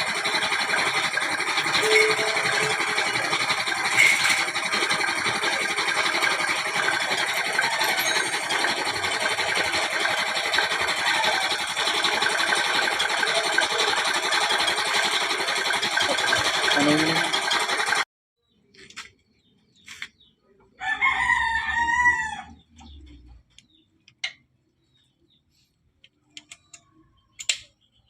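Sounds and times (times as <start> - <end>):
machine motor running: 0.0 - 18.1.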